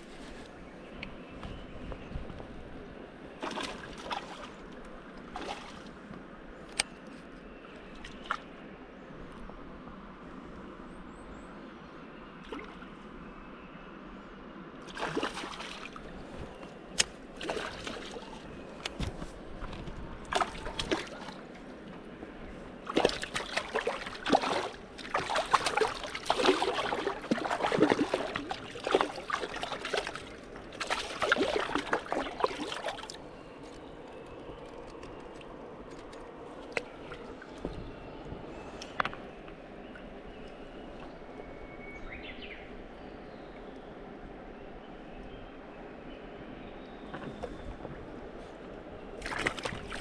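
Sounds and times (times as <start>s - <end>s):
water splashing and sloshing: 3.4s - 7.1s, 7.7s - 8.6s, 12.4s - 13.1s, 14.8s - 41.3s, 47.1s - 50.0s.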